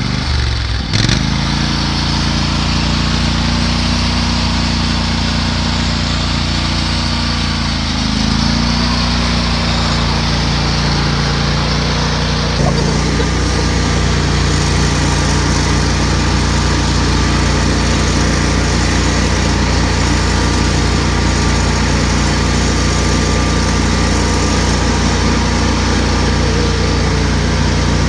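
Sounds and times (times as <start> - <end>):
engine running steadily: 0.0 - 28.0.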